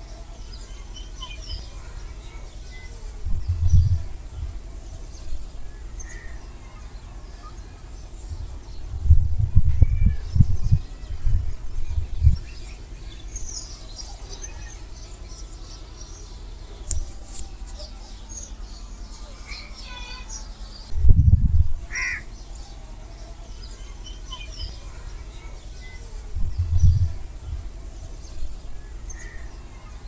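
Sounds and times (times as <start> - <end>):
birds calling: 0.0 - 30.0
low rumble: 20.9 - 21.9.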